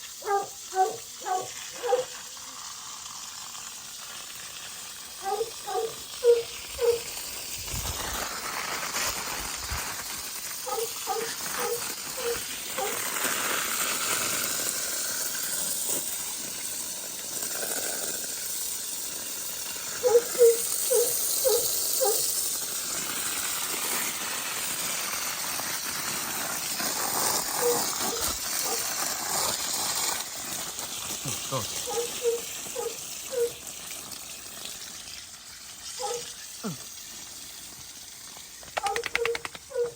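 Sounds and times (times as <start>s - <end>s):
steady hiss: 0.0s - 39.7s
dog barking: 0.2s - 2.2s, 5.2s - 7.1s, 10.6s - 13.0s, 20.0s - 22.3s, 27.6s - 28.9s, 31.8s - 33.6s, 36.0s - 36.3s, 38.8s - 39.9s.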